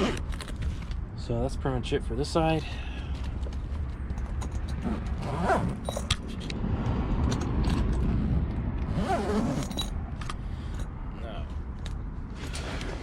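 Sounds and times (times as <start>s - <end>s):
zipper drawn: 0.0s - 0.4s, 4.8s - 6.1s, 8.0s - 9.9s
hand tools clinking and rattling: 3.3s - 6.6s, 8.9s - 11.0s.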